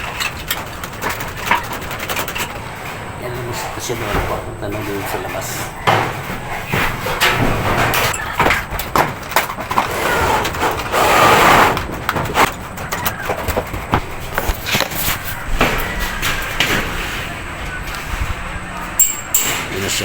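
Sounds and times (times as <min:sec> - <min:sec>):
clicks and knocks in conduit: 0:00.0 - 0:10.9
wire scraping and rustling: 0:00.0 - 0:20.0.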